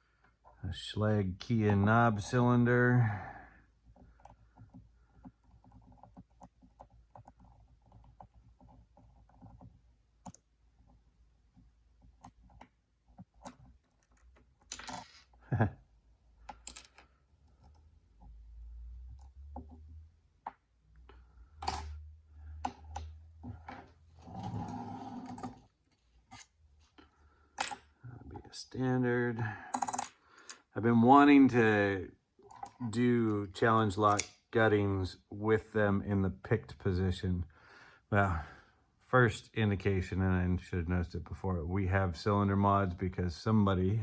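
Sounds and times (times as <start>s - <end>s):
small metallic clicks of lock parts: 21.6s - 22.0s, 34.0s - 34.4s.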